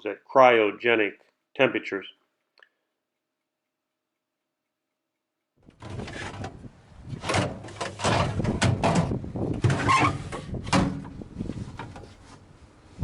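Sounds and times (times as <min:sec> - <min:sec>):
knocks and bumps of handling: 0:10.5 - 0:12.3.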